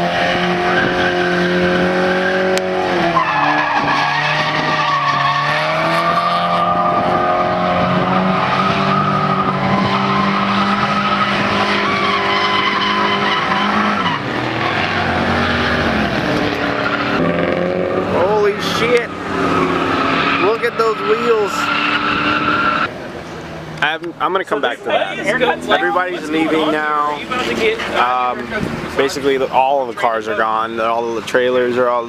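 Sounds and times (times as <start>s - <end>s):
car engine at high revs: 0.0s - 23.9s
tyres squealing and skidding: 0.0s - 32.0s.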